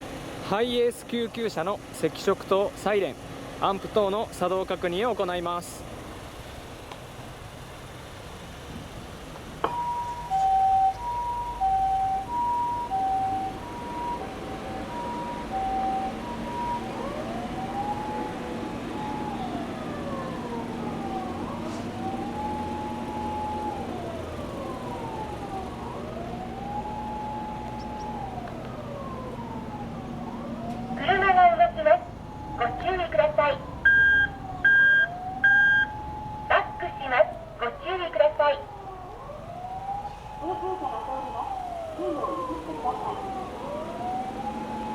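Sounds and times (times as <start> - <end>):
slow wailing siren: 9.6 - 44.9
two-tone hi-lo siren: 9.6 - 44.9.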